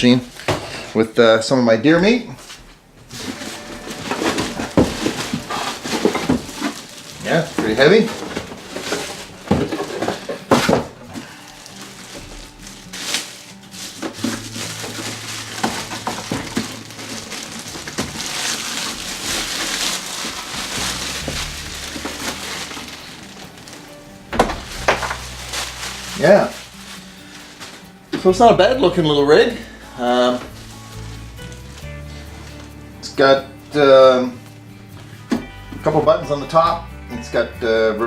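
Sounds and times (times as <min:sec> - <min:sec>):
packaging rustling: 0:02.4 - 0:28.3, 0:30.2 - 0:32.9.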